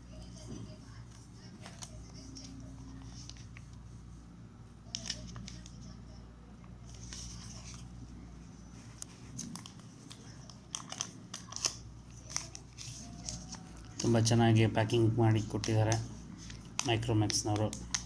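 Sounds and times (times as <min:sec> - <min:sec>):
plastic and cardboard crinkling: 0:04.9 - 0:06.0, 0:06.8 - 0:18.0.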